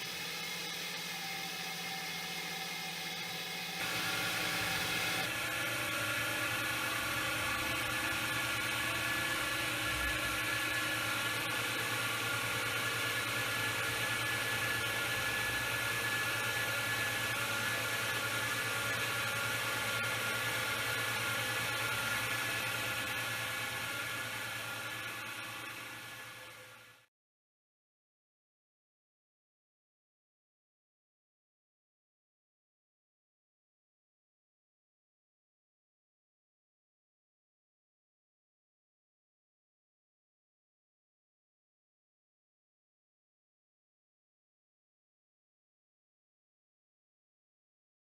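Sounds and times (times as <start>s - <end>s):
milling machine cutting metal: 0.0s - 20.0s.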